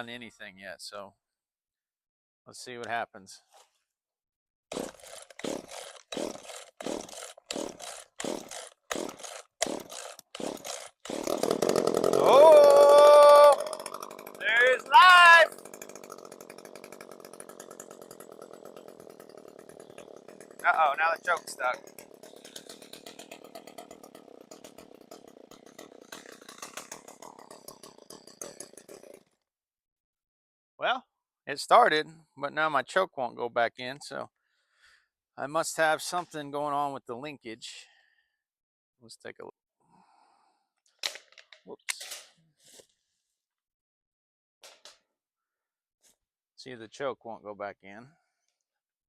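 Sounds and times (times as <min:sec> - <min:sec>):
chainsaw recoil starter pulls: 0:04.7 - 0:29.4.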